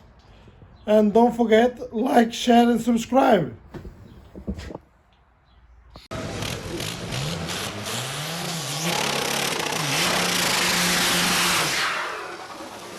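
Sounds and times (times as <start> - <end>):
car engine revving: 6.1 - 12.9.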